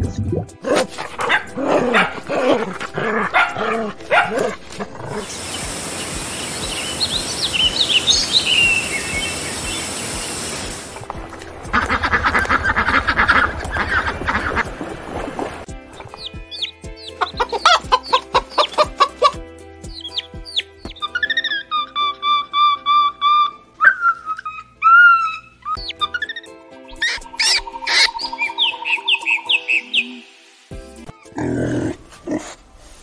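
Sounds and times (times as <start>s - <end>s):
dog barking: 0.6s - 5.3s
birds chirping: 1.0s - 30.6s
rapid bird calls: 5.2s - 11.0s, 15.9s - 30.3s
steady hiss: 5.2s - 11.1s.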